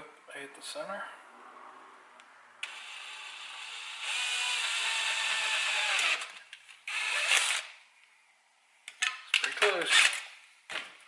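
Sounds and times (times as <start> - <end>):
power drill boring: 2.6 - 7.7.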